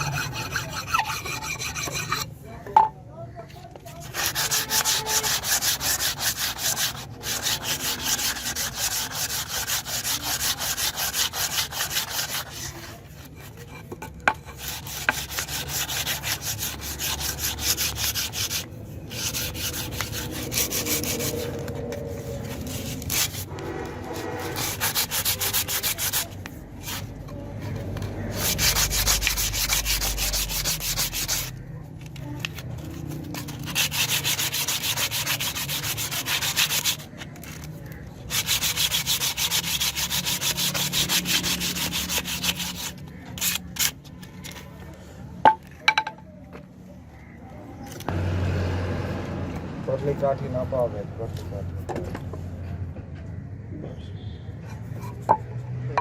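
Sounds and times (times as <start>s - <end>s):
sandpaper rubbing on wood: 0.0s - 2.3s, 3.9s - 27.2s, 27.8s - 31.6s, 32.2s - 44.6s.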